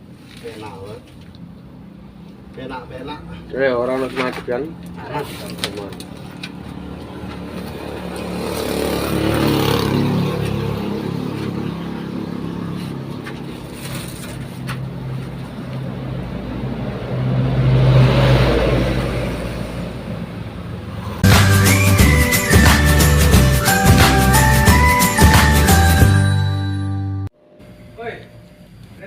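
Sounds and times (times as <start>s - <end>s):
vehicle engines humming on road: 0.0s - 21.8s
vehicle passing: 0.7s - 26.0s.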